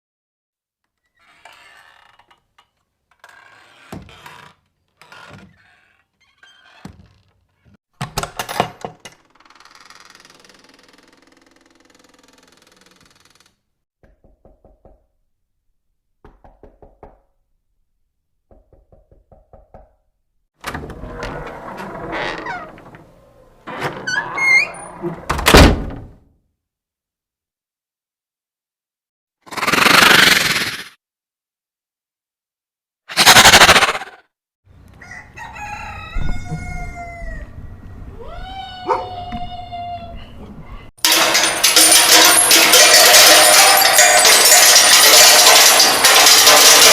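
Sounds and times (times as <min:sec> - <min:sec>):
rooster crowing: 0:34.9 - 0:37.7.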